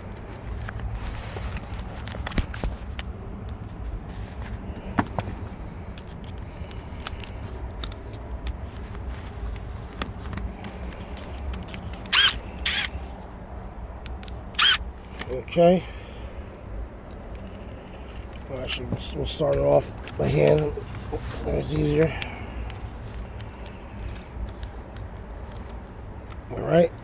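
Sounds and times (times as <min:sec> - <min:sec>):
tools clicking and scraping: 0:00.0 - 0:03.1, 0:04.4 - 0:13.4, 0:14.0 - 0:15.3, 0:17.4 - 0:26.5
power tool zipping bursts: 0:12.1 - 0:12.9, 0:14.6 - 0:14.8.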